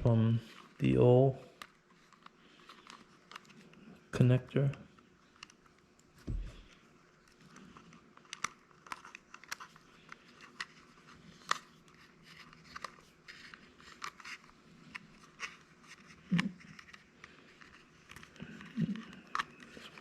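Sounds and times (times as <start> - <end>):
clicks and scrapes of battery connector: 7.8 - 20.0.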